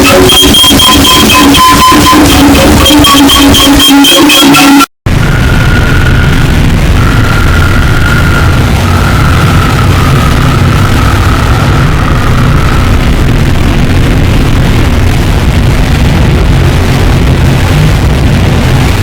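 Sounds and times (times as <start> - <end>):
wavering high tone: 0.0 - 13.4
harsh distorted noise music: 0.0 - 19.0.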